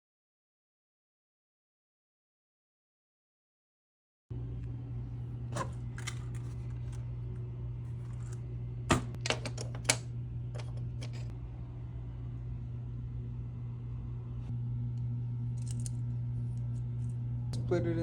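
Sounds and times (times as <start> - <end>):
steady low hum: 4.3 - 18.0
small parts clicking and tapping: 15.6 - 16.0.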